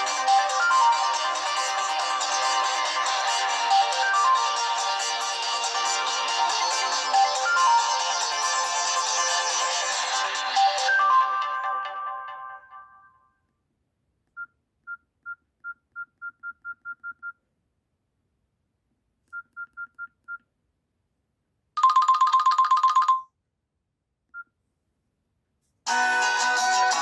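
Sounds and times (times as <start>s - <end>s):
rapid electronic trilling: 0.0s - 11.5s.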